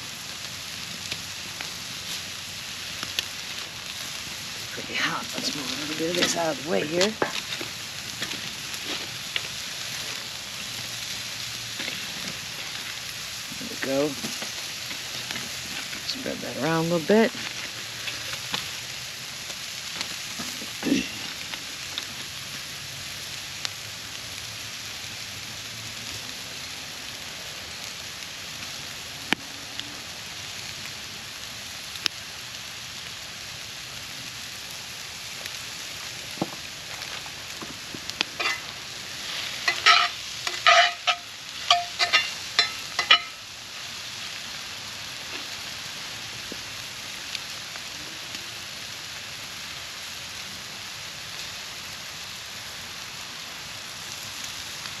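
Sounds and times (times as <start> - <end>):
food sizzling in cast iron: 0.0 - 55.0
metal clinking on cast iron: 38.4 - 43.5.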